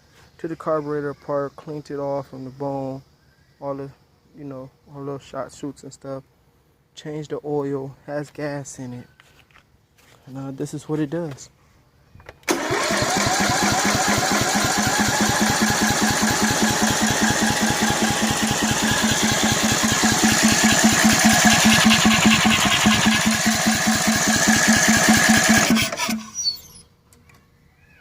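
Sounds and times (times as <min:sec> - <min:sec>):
starter cranking mower engine: 0:12.5 - 0:26.6.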